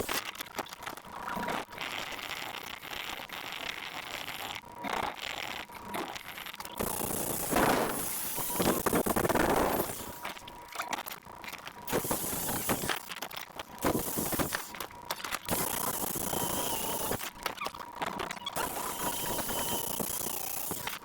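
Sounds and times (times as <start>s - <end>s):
power tool abrading metal: 15.5s - 17.3s, 18.6s - 21.0s.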